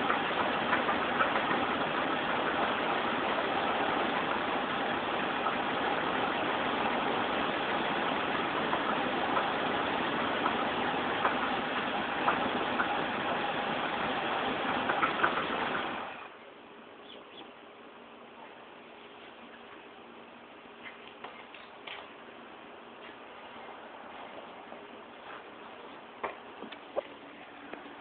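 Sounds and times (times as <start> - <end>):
sharp engine knocks: 0.0 - 16.1
car engine idling: 0.0 - 16.4.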